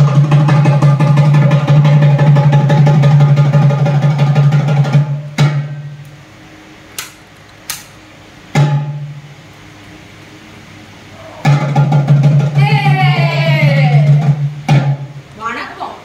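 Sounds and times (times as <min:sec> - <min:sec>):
sharp percussion hits: 0:00.0 - 0:06.0, 0:07.7 - 0:09.3, 0:11.4 - 0:15.3
intro music with drums: 0:00.0 - 0:06.9, 0:08.1 - 0:09.4, 0:11.4 - 0:15.4.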